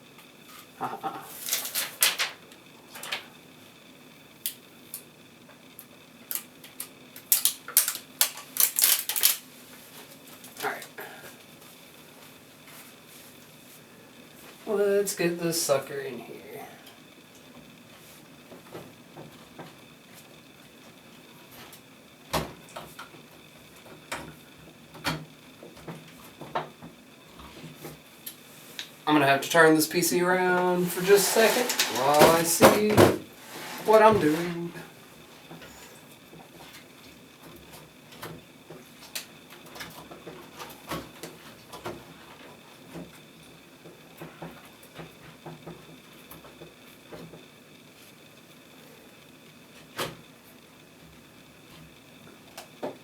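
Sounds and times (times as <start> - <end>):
plastic film peeling crinkle: 1.4 - 3.3, 6.3 - 10.7, 30.8 - 32.6.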